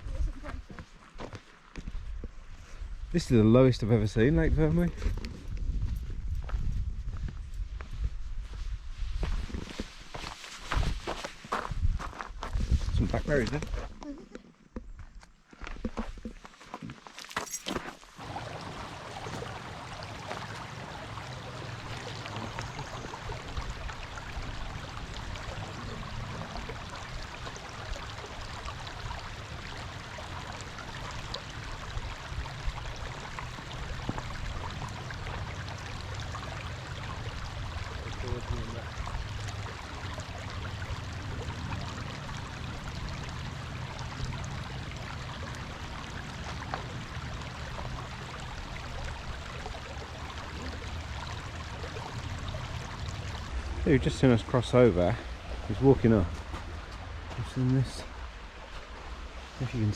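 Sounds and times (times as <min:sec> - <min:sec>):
stream water rushing: 0:18.0 - 0:59.9.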